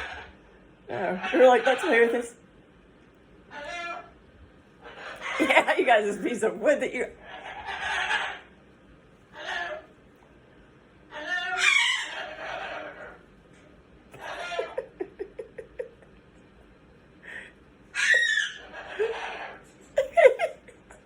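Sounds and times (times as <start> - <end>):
people laughing: 14.2 - 16.2, 20.0 - 21.0.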